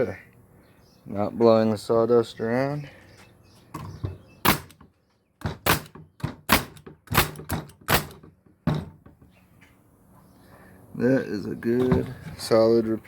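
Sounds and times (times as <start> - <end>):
pneumatic stapler firing: 4.4 - 4.8, 5.4 - 8.3.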